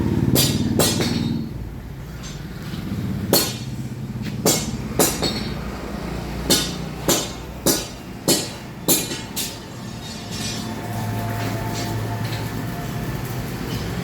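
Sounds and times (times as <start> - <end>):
background song: 8.8 - 14.0.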